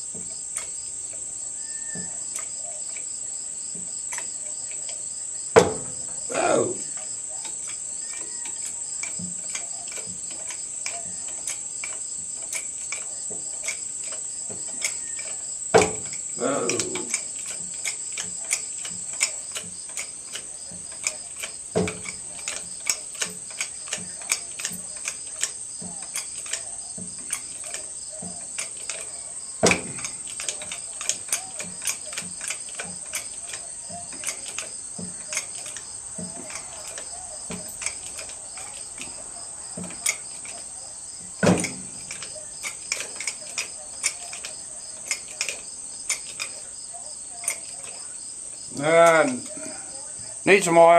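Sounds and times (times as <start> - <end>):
crickets chirping: 0.0 - 50.9
knocks: 5.5 - 6.2, 14.5 - 17.3, 25.8 - 33.2.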